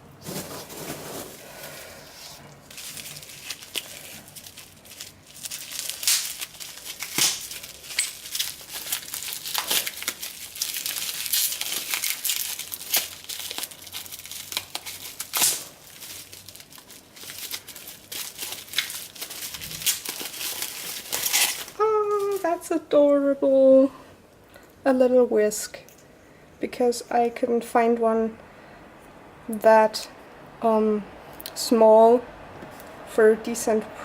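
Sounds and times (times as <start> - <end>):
packaging crinkling and tearing: 0.2 - 22.6.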